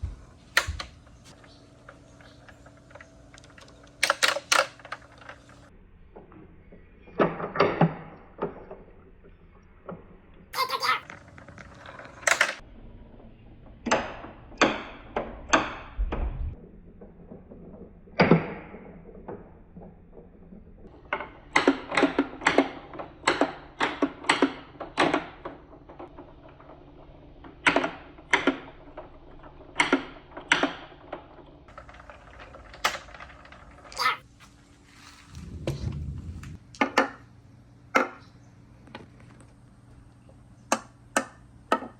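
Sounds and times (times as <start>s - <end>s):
marbles clacking on wooden ramps: 0.4s - 5.7s, 10.8s - 12.6s, 16.7s - 35.5s.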